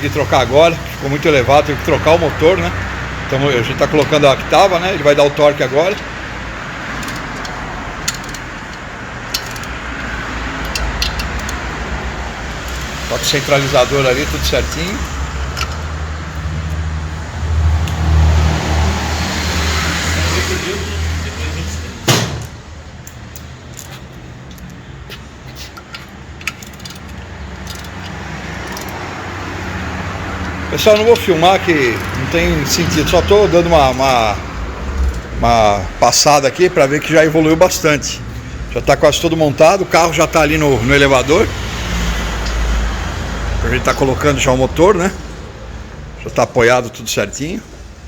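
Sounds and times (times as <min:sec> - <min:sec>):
metal tools clinking: 0:06.8 - 0:11.8, 0:12.6 - 0:16.0, 0:23.2 - 0:29.2, 0:30.4 - 0:32.9
torque wrench clicks: 0:06.9 - 0:11.8, 0:22.4 - 0:29.1.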